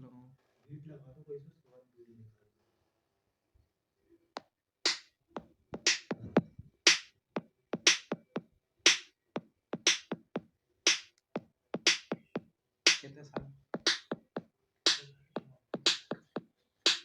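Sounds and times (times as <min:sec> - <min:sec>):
drum machine beat over loudspeaker: 0:04.9 - 0:05.1, 0:05.8 - 0:17.0.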